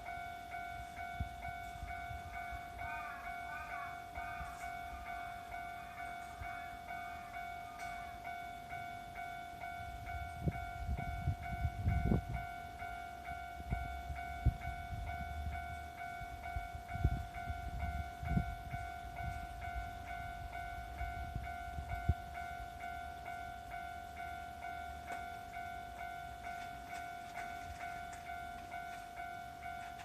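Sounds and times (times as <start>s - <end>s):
level crossing bell ringing: 0.0s - 30.0s.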